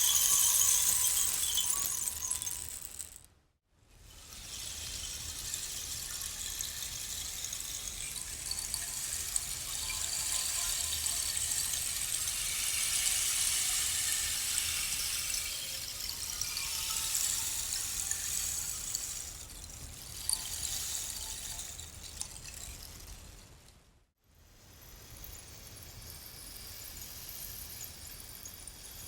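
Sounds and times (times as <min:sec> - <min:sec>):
rainstick trickling: 0:00.0 - 0:03.3, 0:04.0 - 0:23.4.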